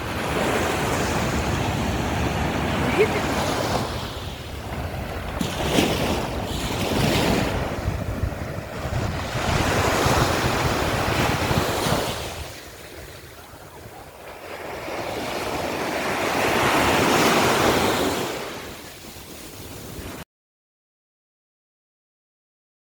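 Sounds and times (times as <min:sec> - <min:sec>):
wind buffeting microphone: 0:00.0 - 0:17.2
waves breaking and washing in: 0:00.0 - 0:20.2.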